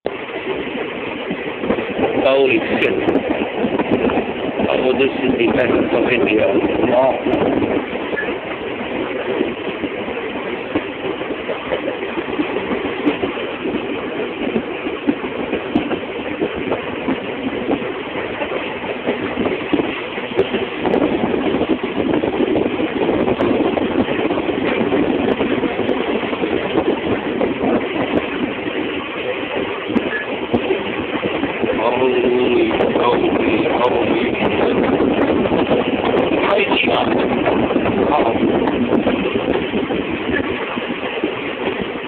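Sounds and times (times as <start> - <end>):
train rumble and rail noise: 0.0 - 42.0.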